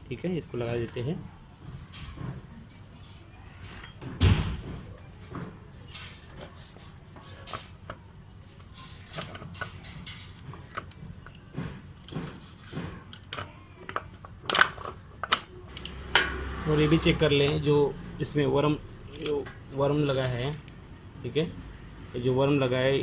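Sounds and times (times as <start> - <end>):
clicks and knocks of parts handled: 3.6 - 16.4, 19.0 - 20.8.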